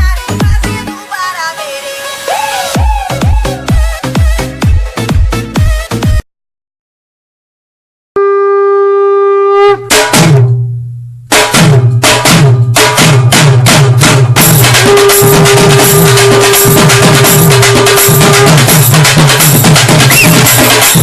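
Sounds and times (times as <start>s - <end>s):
electronic dance music: 0.0s - 6.2s, 14.7s - 21.0s.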